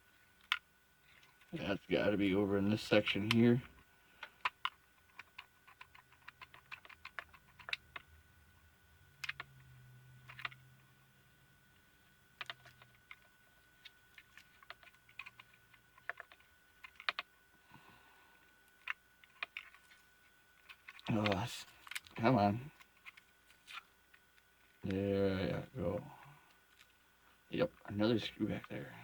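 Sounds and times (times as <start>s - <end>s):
plastic parts handled: 18.6s - 24.8s.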